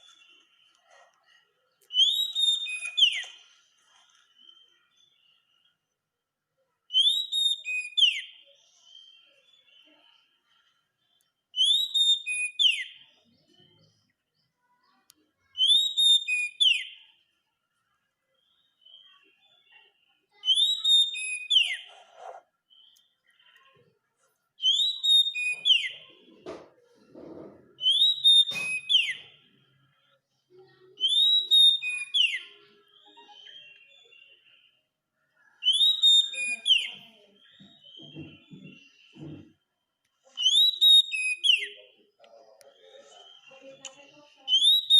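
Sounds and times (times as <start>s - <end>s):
soft bird twittering: 0.0s - 5.8s
bird singing whistled phrase: 1.9s - 3.4s, 6.9s - 8.4s, 11.6s - 13.1s, 15.6s - 17.0s, 20.4s - 21.9s, 24.6s - 26.1s, 27.8s - 29.4s, 31.0s - 34.4s, 35.6s - 38.3s, 40.4s - 41.9s, 44.5s - 44.9s.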